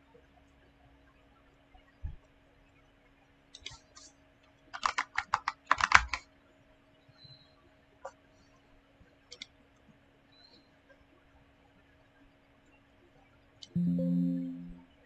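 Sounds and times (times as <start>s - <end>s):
keyboard typing: 4.8s - 6.2s.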